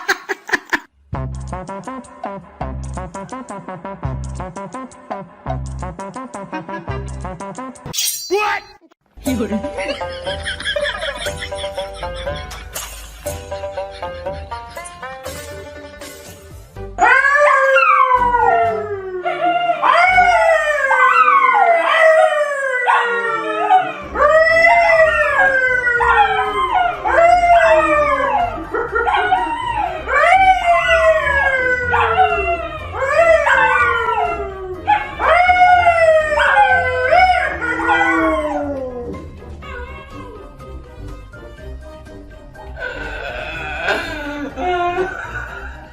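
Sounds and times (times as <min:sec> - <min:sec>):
dog howling: 0:17.0 - 0:40.6.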